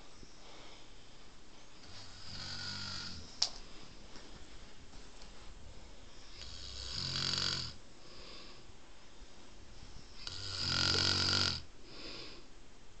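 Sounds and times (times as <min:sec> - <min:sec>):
loud buzzing snores: 0:02.0 - 0:03.3, 0:06.3 - 0:07.8, 0:10.2 - 0:11.7
soft hissing breath out: 0:08.0 - 0:10.5.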